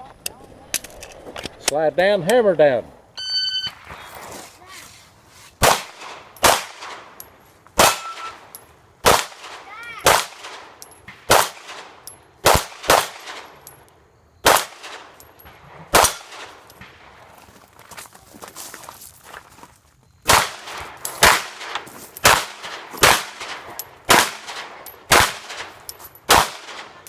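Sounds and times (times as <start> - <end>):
pistol shots: 5.6 - 7.2, 7.8 - 13.8, 14.4 - 17.1, 20.3 - 27.0.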